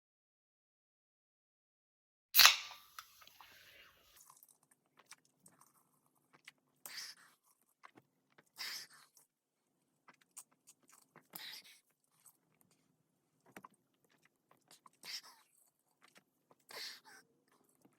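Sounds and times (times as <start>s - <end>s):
sparkling water fizzing: 2.4s - 4.2s.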